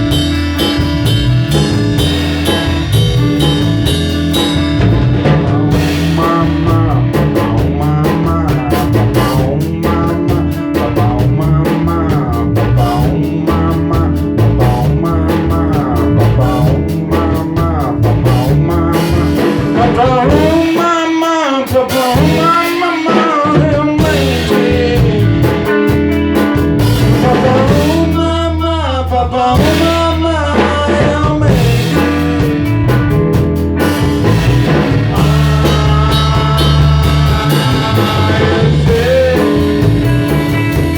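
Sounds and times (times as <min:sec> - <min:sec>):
lead line with bending notes: 0:00.0 - 0:07.1
bass guitar: 0:00.0 - 0:40.9
drum kit beat: 0:00.0 - 0:40.9.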